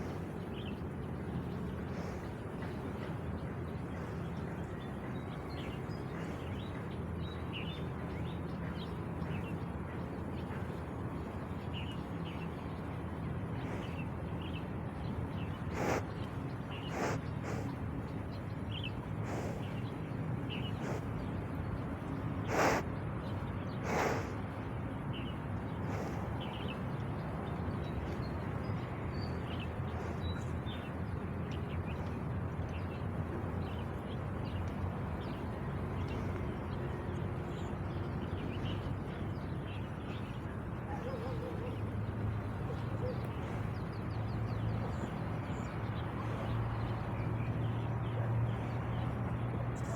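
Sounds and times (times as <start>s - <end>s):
water buffalo sniffing: 0.0s - 9.3s, 12.8s - 14.6s, 15.2s - 18.3s, 18.9s - 23.0s, 23.7s - 24.8s, 25.7s - 27.0s, 27.8s - 34.0s, 42.6s - 49.9s
small birds chirping: 0.0s - 49.9s.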